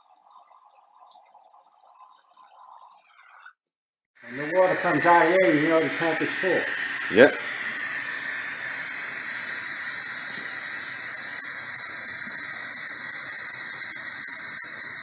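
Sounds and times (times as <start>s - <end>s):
water rushing through plumbing: 4.2s - 15.0s.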